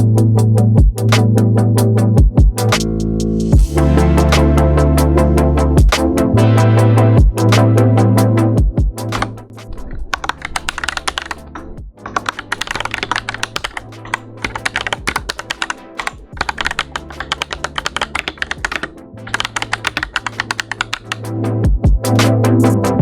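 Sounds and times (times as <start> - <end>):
electronic music with bass line: 0.0 - 23.0
mechanical keyboard key clacks: 12.1 - 21.2.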